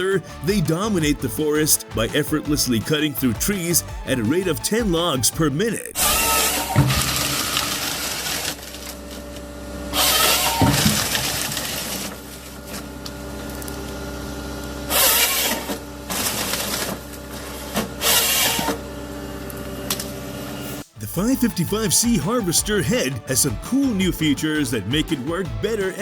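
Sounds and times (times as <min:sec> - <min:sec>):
engine and hydraulics humming: 0:05.9 - 0:21.4
harvester head cutting logs: 0:14.9 - 0:18.8.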